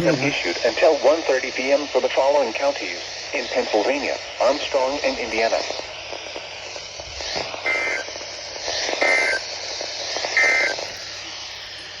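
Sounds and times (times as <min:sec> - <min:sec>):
radio static: 0:00.0 - 0:12.0
two-tone data burst warble: 0:07.6 - 0:09.5, 0:10.3 - 0:12.0.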